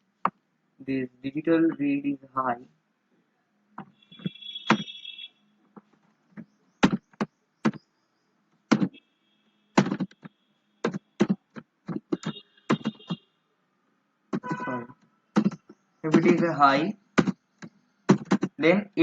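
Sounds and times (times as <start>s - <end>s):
computer keyboard typing: 9.8s - 13.2s, 14.4s - 14.7s, 15.4s - 16.6s, 17.2s - 18.6s.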